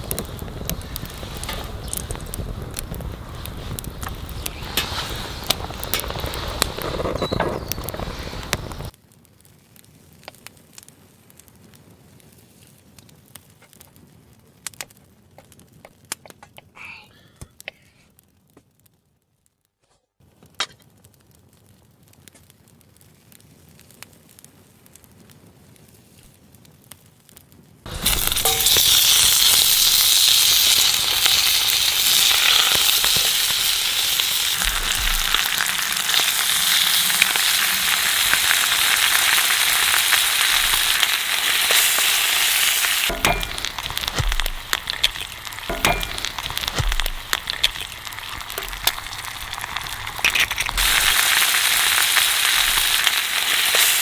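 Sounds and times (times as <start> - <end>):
food sizzling in a pan: 27.9 - 54.0.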